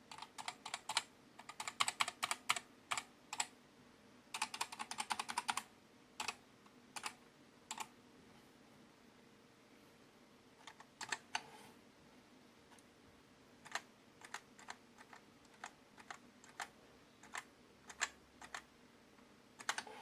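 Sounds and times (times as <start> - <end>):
keyboard keys clicking: 4.4 - 5.6, 13.6 - 18.6, 19.6 - 19.9.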